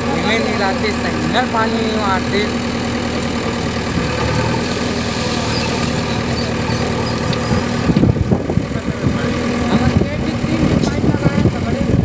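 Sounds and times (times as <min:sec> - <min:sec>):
heavy diesel engine running: 0:00.0 - 0:12.0
irregular low thumps: 0:06.0 - 0:12.0.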